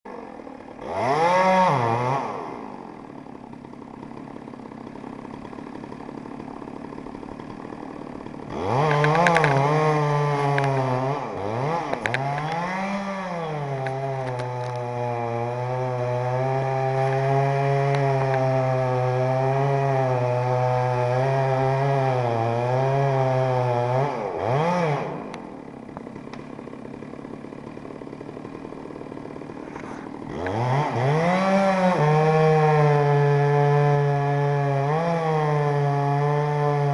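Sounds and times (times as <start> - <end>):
chainsaw revving: 0.1 - 36.9
sharp clicks: 8.8 - 9.7.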